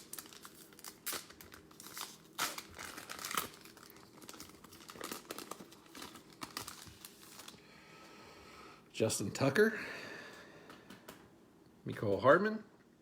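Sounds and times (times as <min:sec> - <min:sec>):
foil wrapper crinkling: 0:00.0 - 0:07.6.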